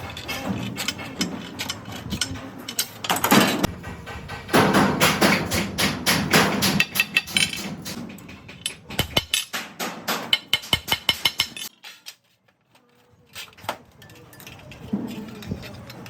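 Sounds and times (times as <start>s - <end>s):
tool noise: 0.0s - 12.4s
hammer knocks: 3.2s - 11.6s.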